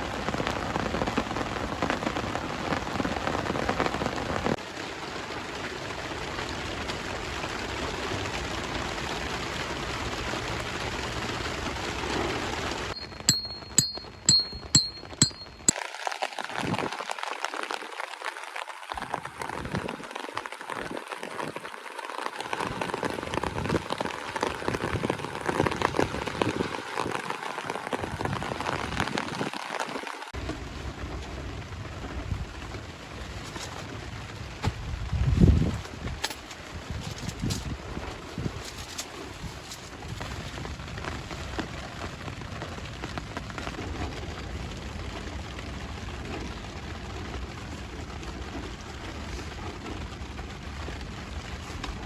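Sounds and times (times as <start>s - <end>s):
steady rain: 0.0s - 13.0s, 15.8s - 52.0s
drops striking a surface: 13.0s - 15.8s
sharp ringing clicks: 13.0s - 15.8s.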